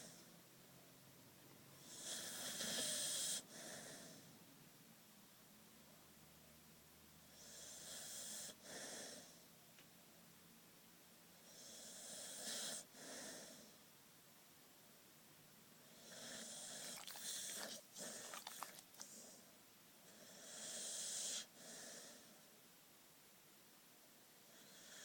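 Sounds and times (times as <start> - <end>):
puppy snoring softly: 0.0 - 0.4, 1.8 - 4.4, 7.2 - 9.5, 11.4 - 13.8, 15.8 - 22.5, 24.4 - 25.0.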